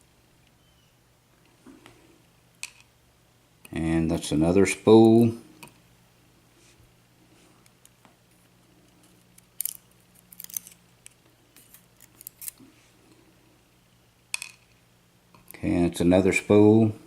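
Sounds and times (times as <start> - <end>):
small metal lock parts clicking: 9.3 - 10.8, 12.0 - 12.6.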